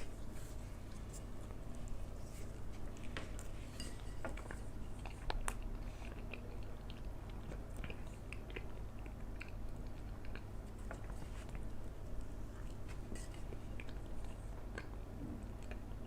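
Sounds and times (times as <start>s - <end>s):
low background hum: 0.0s - 16.0s
person chewing: 0.2s - 15.0s.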